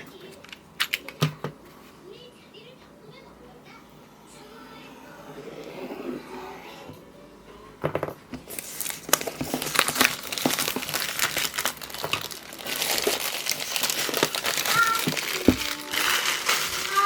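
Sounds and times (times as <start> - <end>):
packaging crinkling and rustling: 8.4 - 17.0.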